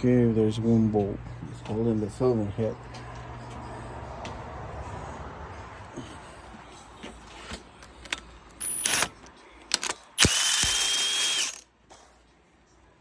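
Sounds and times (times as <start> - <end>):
handheld power tool bursts: 8.6 - 11.6.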